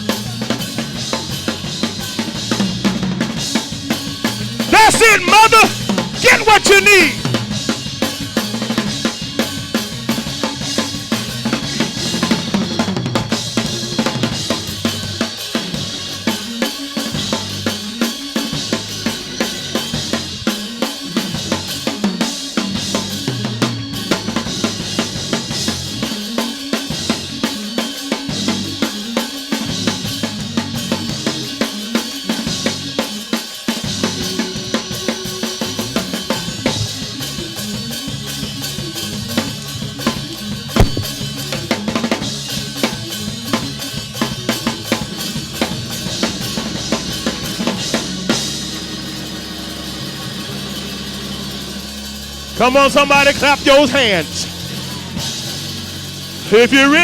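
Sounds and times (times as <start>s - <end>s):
band playing praise music: 0.0s - 57.0s
drum kit fast beat: 0.0s - 57.0s
bass line: 40.8s - 41.4s, 52.6s - 54.7s, 56.4s - 57.0s.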